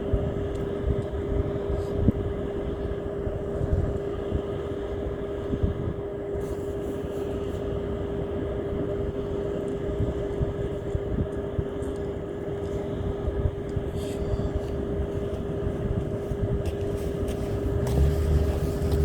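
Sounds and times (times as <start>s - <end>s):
engine running: 14.0s - 19.0s.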